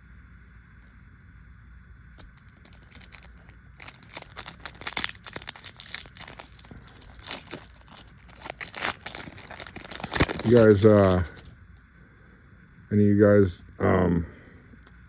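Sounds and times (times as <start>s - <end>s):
plastic wrapper crinkling: 2.2s - 11.5s.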